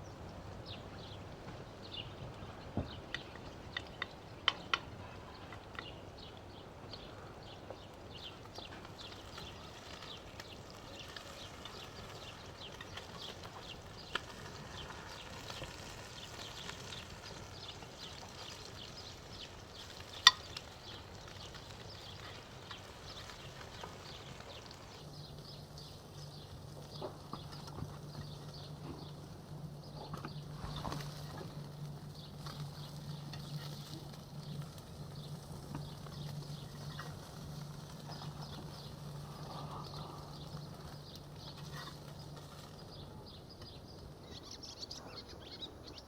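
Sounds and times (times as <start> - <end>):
steady low hum: 6.2 - 46.0
patties sizzling in oil: 7.8 - 29.4, 30.4 - 42.9.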